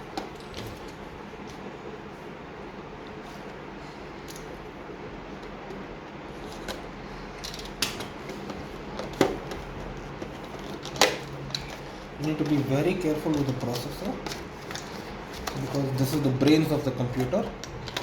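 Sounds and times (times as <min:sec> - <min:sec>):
room noise: 0:00.0 - 0:18.0
packaging handling clicks: 0:06.5 - 0:18.0.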